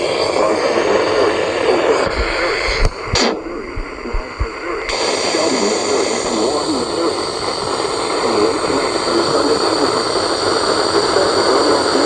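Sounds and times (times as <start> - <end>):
muffled voice on radio: 0.0 - 12.0
radio hiss: 0.0 - 12.0
low thumps: 2.1 - 4.9.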